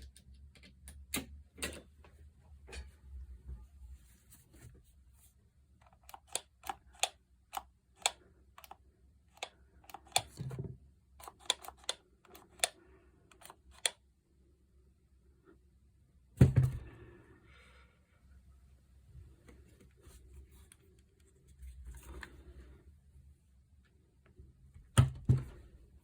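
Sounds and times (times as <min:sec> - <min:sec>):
tools and parts clicking: 0:05.8 - 0:08.8, 0:11.2 - 0:14.0.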